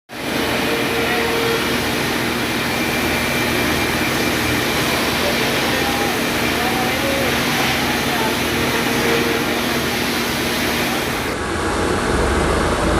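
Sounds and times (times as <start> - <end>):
sawmill machinery running: 0.1 - 12.9.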